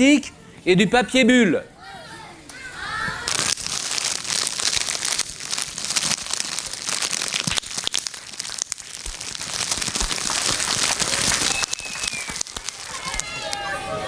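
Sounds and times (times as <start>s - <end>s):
crumpling tape and bubble wrap: 3.3s - 13.7s.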